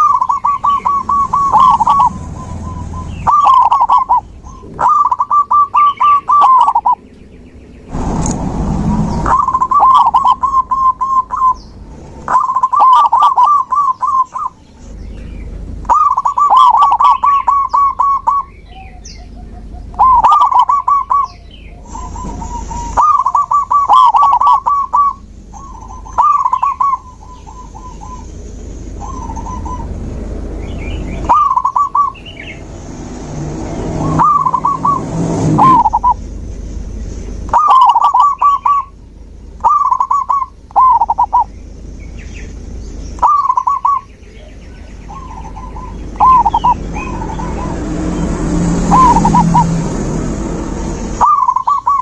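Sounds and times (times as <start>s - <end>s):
doves cooing: 0.0s - 7.0s, 9.1s - 30.3s, 30.9s - 32.8s, 33.4s - 36.2s, 37.4s - 39.0s, 39.6s - 42.0s, 43.1s - 49.8s, 51.2s - 52.0s
brief rush of noise: 7.9s - 9.8s
small birds chirping faintly: 35.6s - 49.7s.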